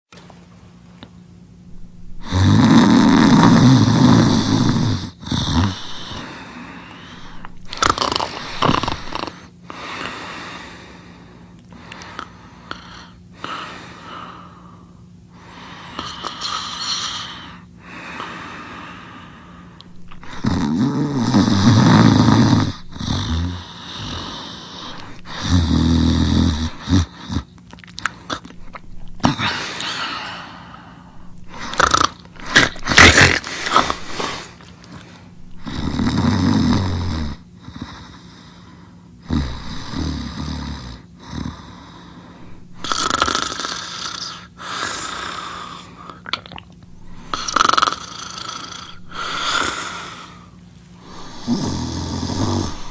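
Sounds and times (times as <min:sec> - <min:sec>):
loud rasping snoring: 0:01.7 - 0:06.3, 0:07.1 - 0:09.4, 0:19.9 - 0:27.5, 0:28.6 - 0:29.6, 0:31.1 - 0:34.5, 0:35.4 - 0:37.5, 0:39.2 - 0:41.6, 0:42.4 - 0:45.0, 0:46.9 - 0:50.0, 0:51.0 - 0:52.9.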